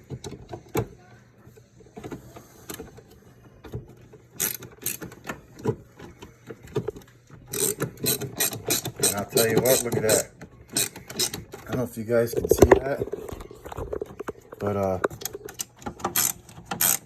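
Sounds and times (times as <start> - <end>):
screwdriver ratcheting clicks: 4.4 - 5.1, 7.5 - 11.6, 15.0 - 17.0.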